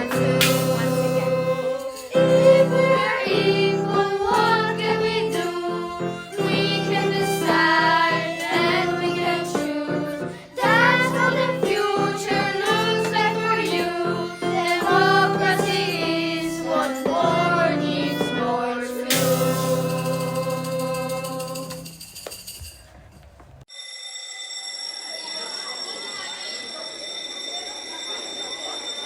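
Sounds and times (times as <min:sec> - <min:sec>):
students singing: 0:00.0 - 0:21.9
instrumental backing: 0:00.0 - 0:22.8.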